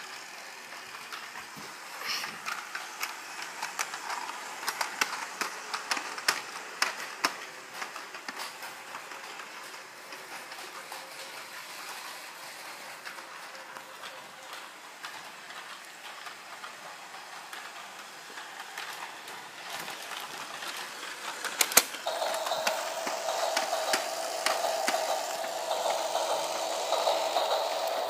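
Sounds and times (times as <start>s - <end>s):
train wheels clicking over rails: 0.0s - 28.0s
sharp clatter: 21.4s - 28.0s.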